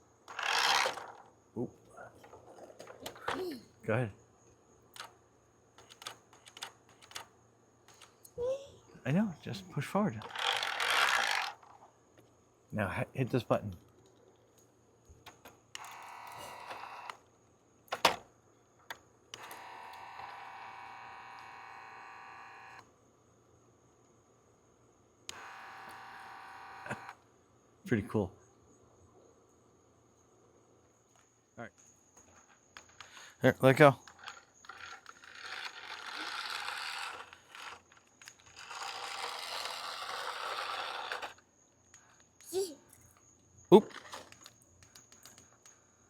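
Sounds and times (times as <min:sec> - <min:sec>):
toy motor and gears whirring: 0:00.3 - 0:01.3, 0:10.2 - 0:11.9, 0:15.8 - 0:17.2, 0:19.4 - 0:22.8, 0:25.3 - 0:27.2, 0:33.6 - 0:41.5, 0:43.7 - 0:45.3.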